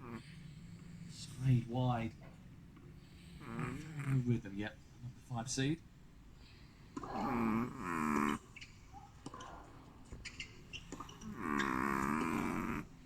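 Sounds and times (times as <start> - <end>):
small dog snoring: 0.0 - 0.3, 3.2 - 4.4, 7.0 - 8.6, 10.8 - 13.0.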